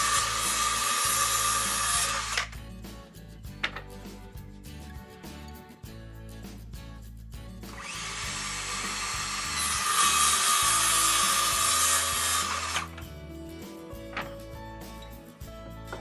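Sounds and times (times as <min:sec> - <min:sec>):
power saw cutting wood: 0:00.0 - 0:02.6, 0:07.7 - 0:13.0.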